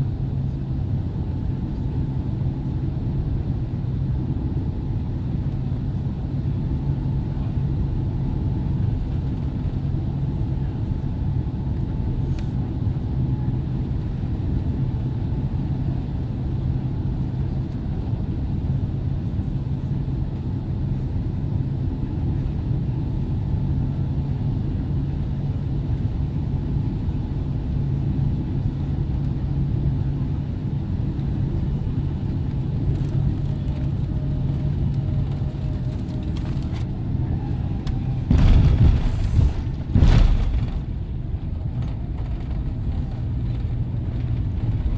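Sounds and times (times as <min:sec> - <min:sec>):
sudden loud burst of noise: 0:37.9 - 0:41.2.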